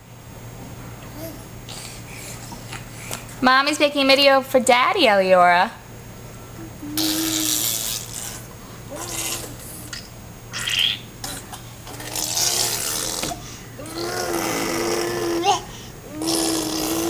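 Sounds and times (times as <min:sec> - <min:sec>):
baby blowing raspberries: 0:06.6 - 0:10.0, 0:10.6 - 0:17.0.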